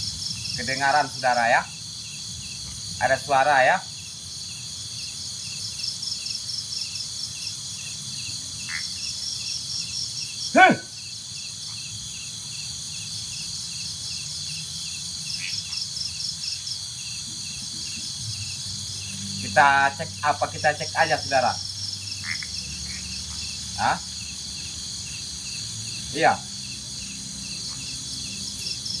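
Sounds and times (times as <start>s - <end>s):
crickets chirping: 0.0s - 29.0s
loud pitched call: 10.6s - 11.0s.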